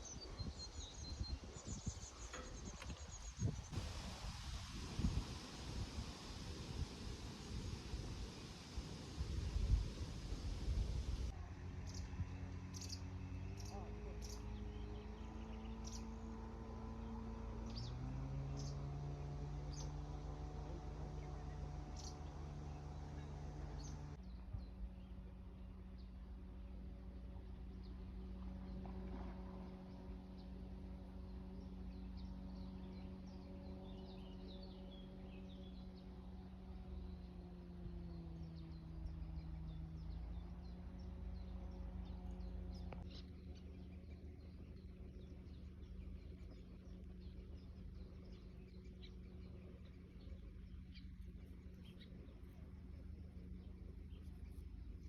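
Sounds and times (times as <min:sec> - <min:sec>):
birds chirping: 0:00.0 - 0:26.1, 0:27.6 - 0:55.0
steady low hum: 0:00.0 - 0:55.0.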